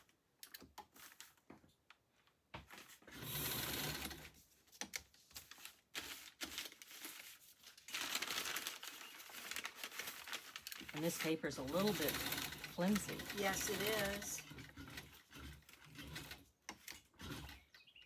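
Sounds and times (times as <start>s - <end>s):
sewing machine stitching: 3.1s - 4.4s, 10.8s - 17.7s
handling rustles: 4.5s - 17.5s.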